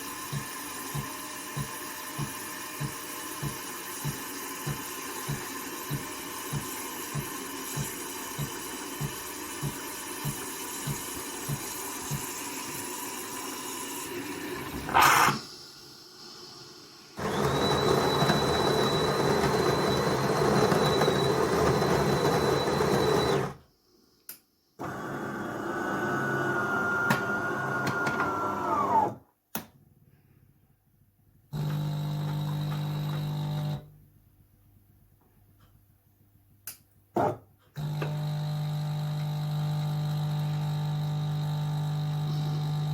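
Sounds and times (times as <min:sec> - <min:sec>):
espresso machine humming: 0:17.2 - 0:23.5, 0:31.6 - 0:33.8, 0:37.8 - 0:42.9.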